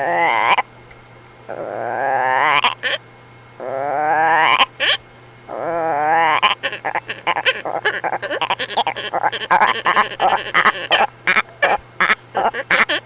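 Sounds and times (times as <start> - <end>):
man making honking croaking noises: 6.3 - 13.0.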